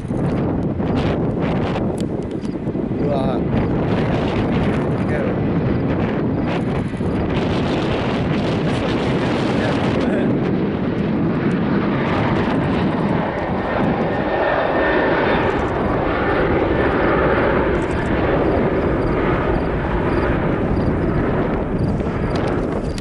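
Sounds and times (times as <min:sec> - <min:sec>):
airliner engines at high power: 0:00.0 - 0:23.0.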